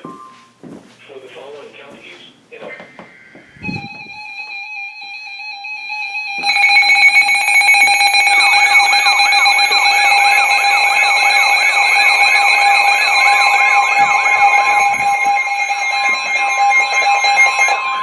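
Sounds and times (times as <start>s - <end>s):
weather alert radio alarm: 2.7s - 18.0s
warbling siren-like alarm: 3.3s - 18.0s
steady high beep: 3.6s - 18.0s.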